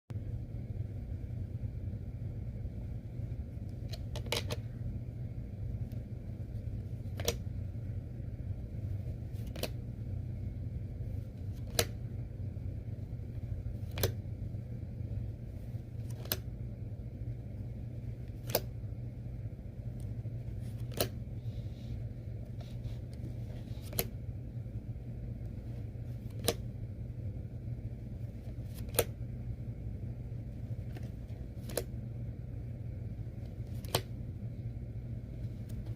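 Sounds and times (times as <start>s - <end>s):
steady low hum: 0.1s - 35.9s
cards snapping on table: 7.1s - 7.4s, 9.4s - 9.8s, 13.8s - 14.2s, 16.0s - 16.4s, 20.7s - 21.2s, 26.3s - 26.6s, 28.7s - 29.1s, 30.9s - 31.9s, 33.7s - 34.1s.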